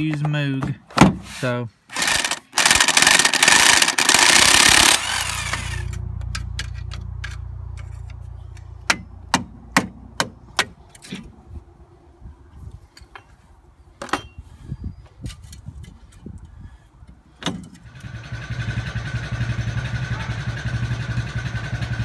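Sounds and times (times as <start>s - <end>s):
power tool hammering: 1.9s - 6.0s, 8.8s - 10.7s
low hum: 3.5s - 13.1s
sharp metallic knocks: 8.8s - 11.2s.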